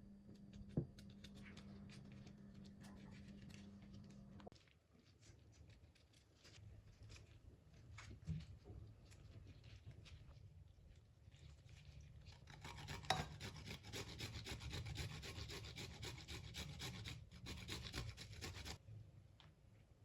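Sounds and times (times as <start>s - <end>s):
ginger grated on a hand grater: 12.4s - 18.8s.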